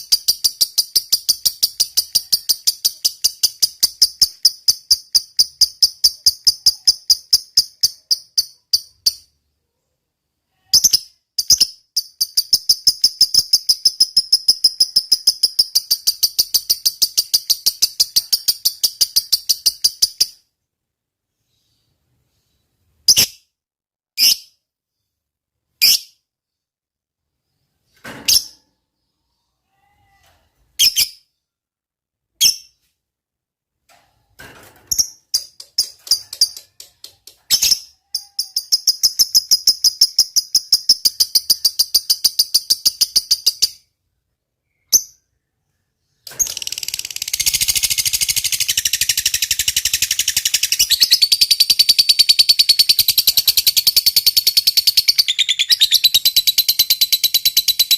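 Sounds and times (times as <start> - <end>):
lovebird chirps and trills: 0.0 - 9.4, 34.9 - 43.9, 44.6 - 57.9.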